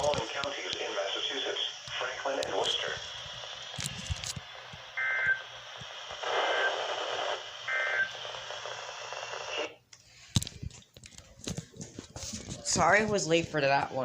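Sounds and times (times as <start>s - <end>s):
hissing radio signal: 0.0s - 9.8s.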